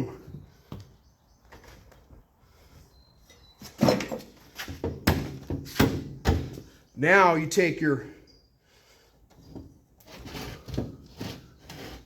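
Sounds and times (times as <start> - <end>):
tools knocking and clunking: 3.7 - 6.7.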